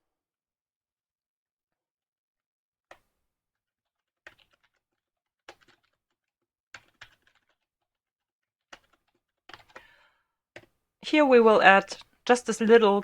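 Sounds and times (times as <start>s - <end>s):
keyboard keystrokes: 8.7s - 9.9s.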